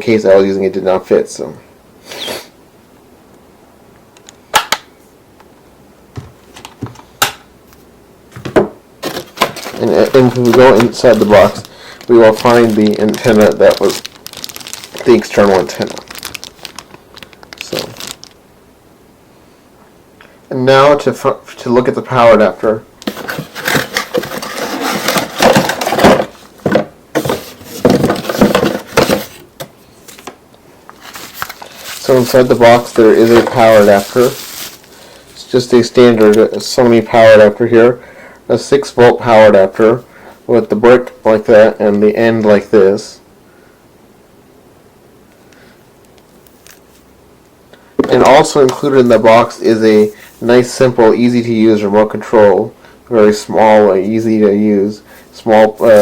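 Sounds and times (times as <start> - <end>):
box packaging rustling: 9.0 - 18.4, 23.0 - 30.3, 31.0 - 36.7.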